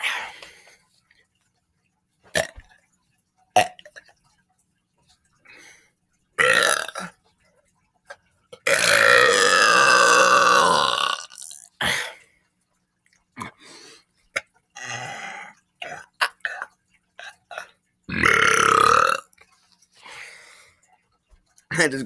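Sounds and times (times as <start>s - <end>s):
person burping: 2.4s - 2.6s, 6.4s - 7.2s, 8.6s - 12.2s, 13.4s - 13.6s, 14.8s - 19.3s.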